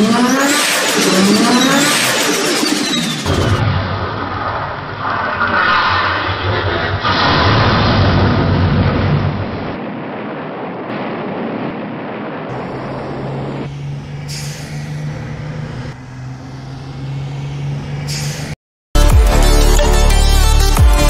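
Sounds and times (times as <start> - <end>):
rushing engine and traffic noise: 0.0 - 7.4, 12.5 - 21.0
low engine hum: 12.5 - 18.6.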